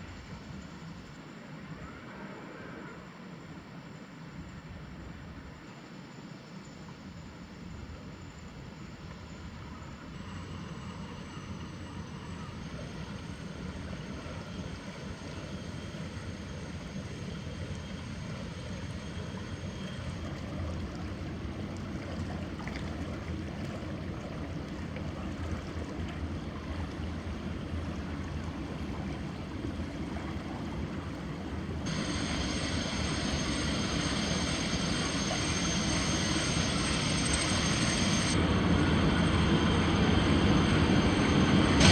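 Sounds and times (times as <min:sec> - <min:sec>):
high whine: 0:07.8 - 0:41.9
diesel engine running: 0:12.2 - 0:41.9.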